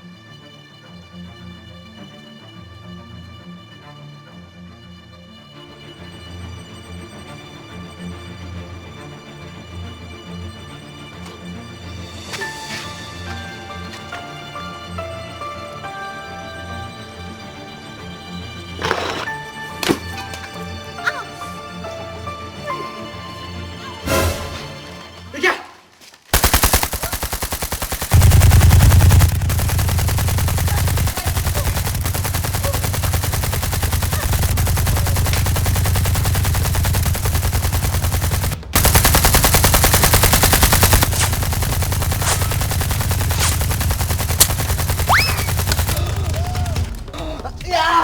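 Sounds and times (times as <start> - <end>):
rapid automatic gunfire: 26.4 - 47.1.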